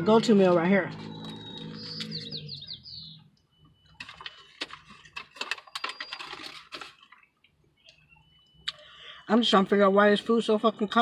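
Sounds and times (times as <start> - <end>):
paper wrapper crinkling: 4.0 - 7.5.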